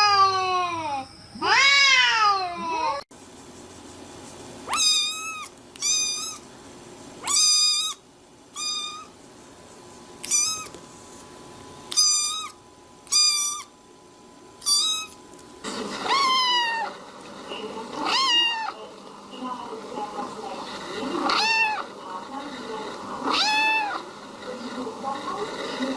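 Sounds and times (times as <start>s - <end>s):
cat meowing: 0.0s - 3.0s, 4.7s - 6.4s, 7.2s - 8.0s, 8.6s - 9.1s, 10.2s - 10.8s, 11.9s - 13.7s, 14.6s - 15.2s, 16.0s - 16.9s, 18.0s - 18.8s, 21.2s - 21.9s, 23.2s - 24.0s.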